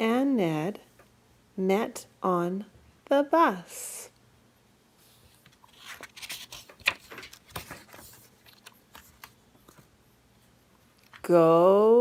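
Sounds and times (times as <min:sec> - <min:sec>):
book pages rustling: 0:05.0 - 0:09.9.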